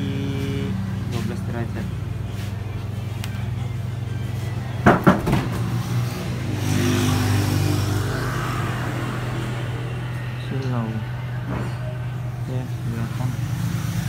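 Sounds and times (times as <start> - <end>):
refrigerator humming: 0.0 - 14.0
sharp knocks: 4.8 - 5.7.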